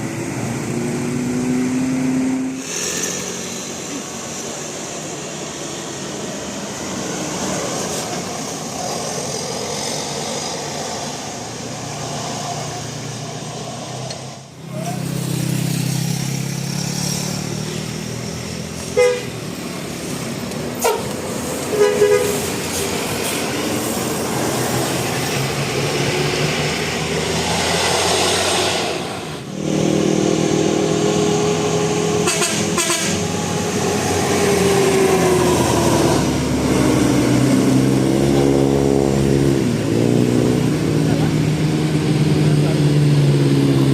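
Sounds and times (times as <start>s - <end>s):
engine running: 0.0s - 43.9s
musical horn playing a melody: 19.0s - 19.3s, 21.7s - 22.5s, 32.2s - 33.2s.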